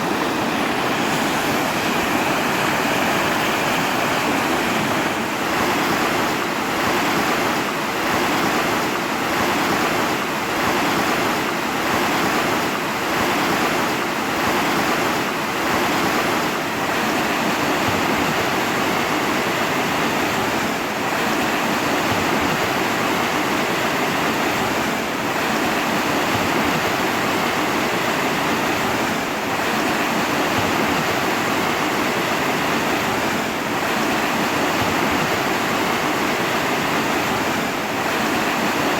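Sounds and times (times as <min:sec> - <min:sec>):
rushing water: 0:00.0 - 0:38.9.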